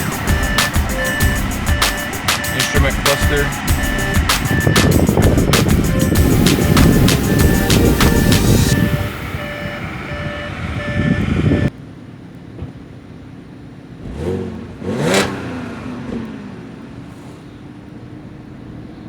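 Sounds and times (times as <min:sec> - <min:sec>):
car engine revving: 0:00.0 - 0:11.5, 0:13.9 - 0:18.6
repeating tones: 0:00.0 - 0:11.7.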